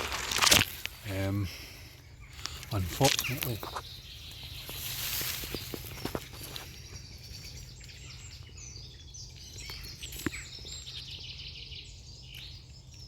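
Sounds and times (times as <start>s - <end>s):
songbirds chirping: 0.0s - 13.0s.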